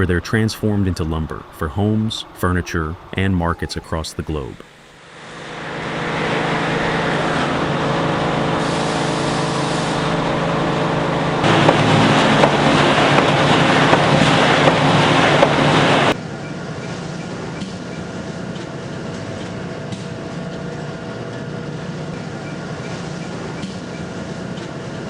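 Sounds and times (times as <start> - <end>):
industrial machinery hum: 0.0 - 25.0
machinery knocks: 11.4 - 16.2.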